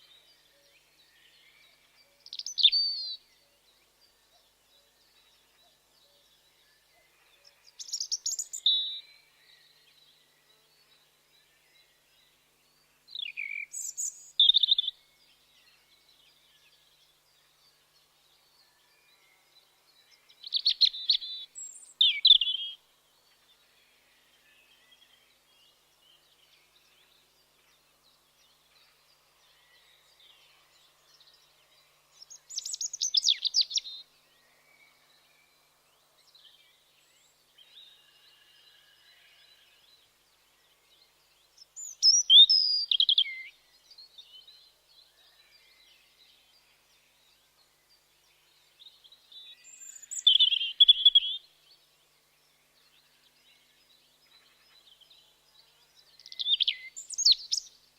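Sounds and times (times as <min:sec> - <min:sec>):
faint bird chirps: 0:00.0 - 0:27.8, 0:28.6 - 0:57.9
robin singing warbling phrases: 0:02.2 - 0:03.2, 0:07.7 - 0:09.0, 0:13.1 - 0:14.9, 0:20.4 - 0:22.8, 0:41.7 - 0:43.6, 0:49.4 - 0:51.4, 0:56.2 - 0:57.7.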